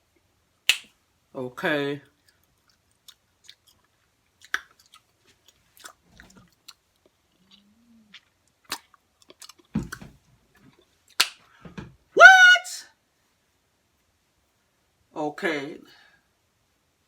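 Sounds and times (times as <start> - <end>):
mouth clicks and smacks: 0.7 - 0.9, 2.2 - 10.1, 11.1 - 11.5.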